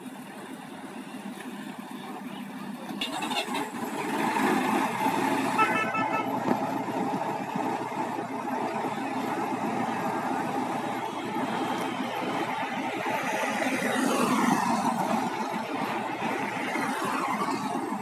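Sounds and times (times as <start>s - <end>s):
heavy vehicle engine running: 0.0s - 18.0s
horn rapid beeps: 5.5s - 6.4s.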